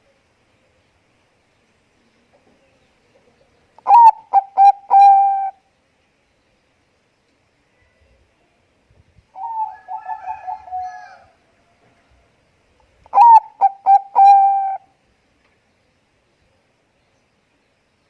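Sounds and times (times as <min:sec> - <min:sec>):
dove cooing: 0:03.8 - 0:05.6, 0:09.4 - 0:11.4, 0:13.1 - 0:14.9.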